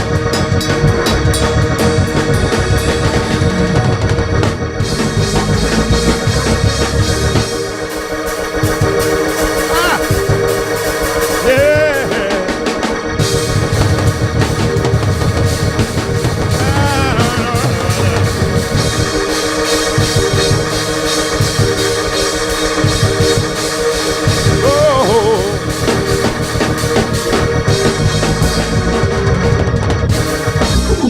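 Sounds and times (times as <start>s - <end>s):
drum kit: 0.0s - 31.0s
organ: 0.0s - 31.0s
person singing: 9.7s - 10.0s, 11.4s - 12.7s, 16.6s - 18.5s, 24.5s - 25.6s.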